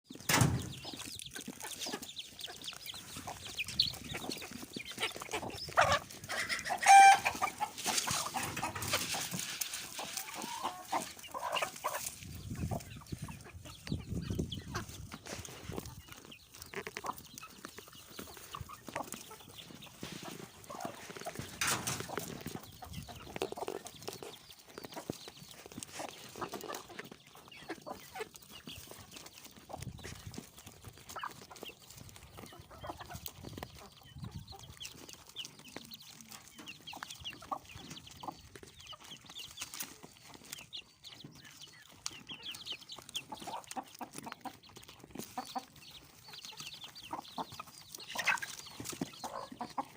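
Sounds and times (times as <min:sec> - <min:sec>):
chickens clucking and chirping: 0:00.1 - 0:49.9.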